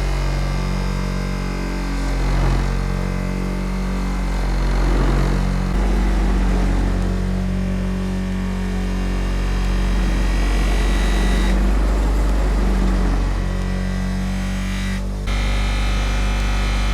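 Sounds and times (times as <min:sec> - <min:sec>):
power tool motor hum: 0:09.5 - 0:16.9.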